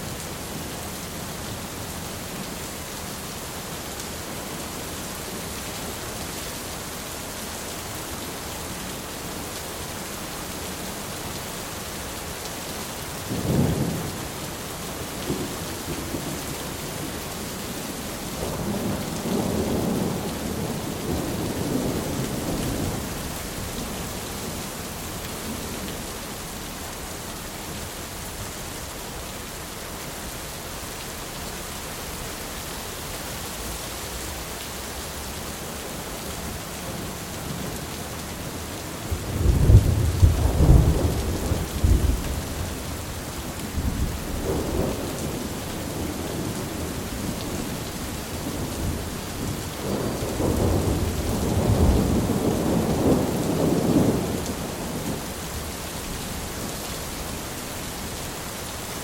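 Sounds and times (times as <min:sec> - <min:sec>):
heavy rain hissing: 0:29.6 - 0:59.0
thunder rumbling: 0:36.8 - 0:42.9, 0:48.4 - 0:55.2.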